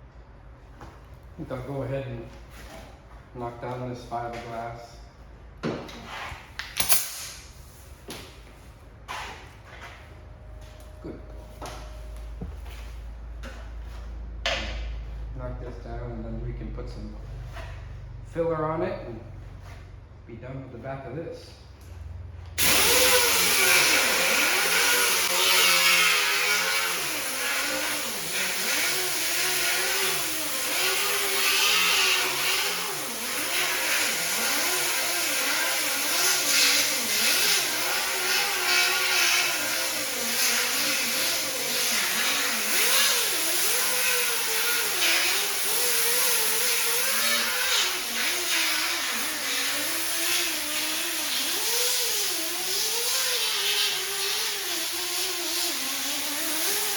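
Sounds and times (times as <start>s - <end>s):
power sander grinding fiberglass: 22.6s - 56.9s.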